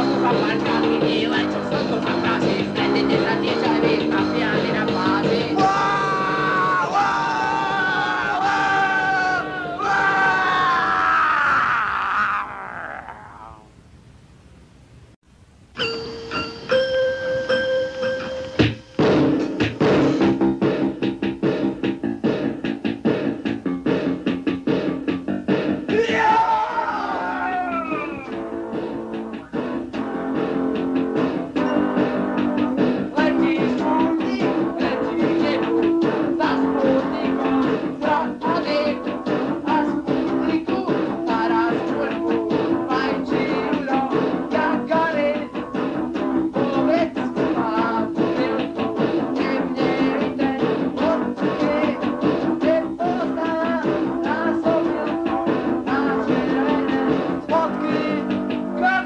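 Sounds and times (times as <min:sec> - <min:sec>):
lo-fi punk rock: 0:00.0 - 0:13.7, 0:18.2 - 0:59.0
steady drum beat: 0:18.6 - 0:59.0.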